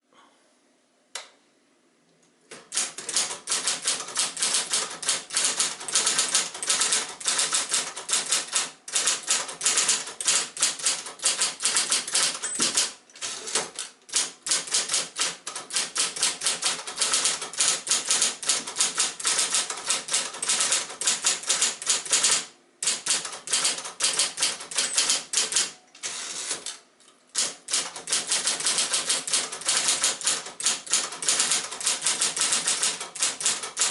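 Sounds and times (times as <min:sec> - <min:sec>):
electric typewriter key strikes: 0:02.5 - 0:26.8, 0:27.4 - 0:33.9.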